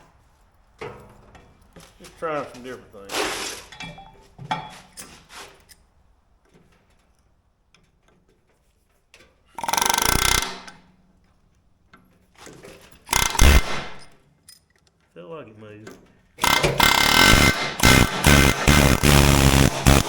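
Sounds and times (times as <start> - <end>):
pneumatic air hammer on steel: 9.6 - 10.8, 13.1 - 14.1, 16.4 - 20.0.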